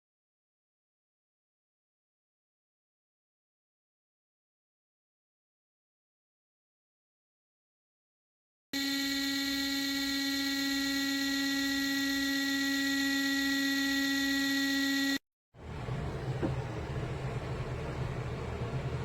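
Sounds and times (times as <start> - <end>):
heater fan motor whine: 8.8 - 19.0.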